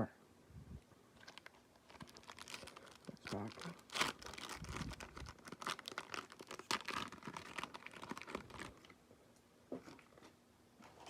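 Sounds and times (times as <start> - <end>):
foil wrappers crinkling and tearing: 1.2 - 9.0.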